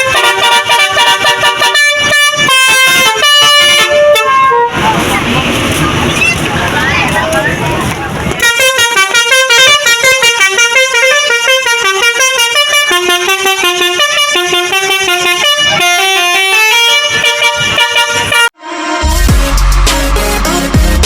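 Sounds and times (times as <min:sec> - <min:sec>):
musical air horn playing a tune: 0:00.0 - 0:04.8, 0:08.4 - 0:20.8
music with deep bass: 0:18.7 - 0:21.0.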